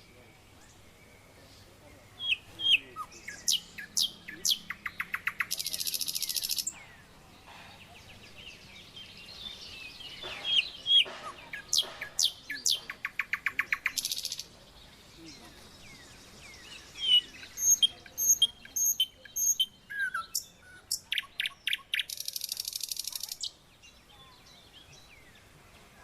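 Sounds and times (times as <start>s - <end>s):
songbird singing: 0.0s - 26.0s.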